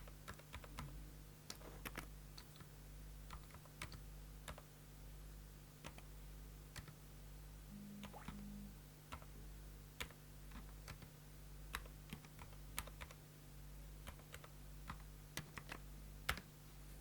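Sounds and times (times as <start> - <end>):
quiet keyboard keystrokes: 0.0 - 4.7, 5.8 - 6.1, 6.7 - 7.0, 7.8 - 9.3, 10.0 - 11.1, 11.7 - 13.2, 14.0 - 16.5
steady low hum: 0.0 - 17.0.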